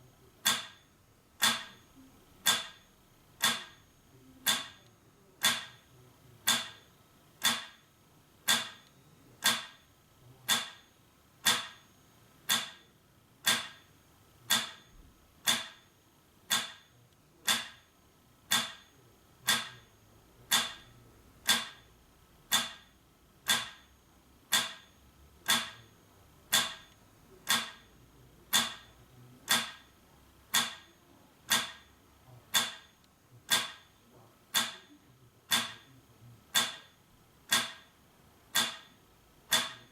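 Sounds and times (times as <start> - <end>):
metronome ticking: 1.4 - 1.8, 19.5 - 19.8, 20.5 - 21.8, 22.5 - 22.9, 23.5 - 23.9, 24.5 - 24.9, 25.5 - 25.9, 26.5 - 27.8, 28.5 - 29.9, 30.5 - 30.9, 34.5 - 35.9, 36.5 - 36.9, 37.5 - 37.9, 38.5 - 38.9, 39.5 - 39.9.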